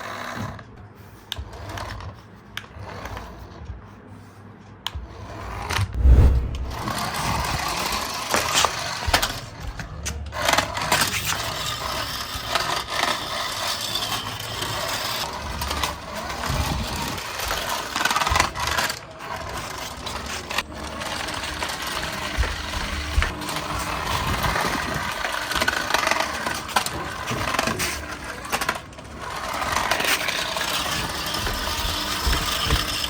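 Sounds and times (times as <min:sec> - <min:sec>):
toy car electric motor and gears: 0:00.0 - 0:03.6, 0:07.2 - 0:33.0.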